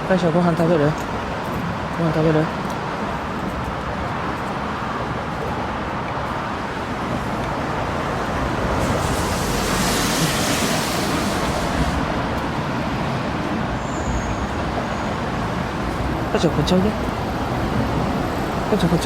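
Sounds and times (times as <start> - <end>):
passing vehicles hiss: 6.4 - 19.0.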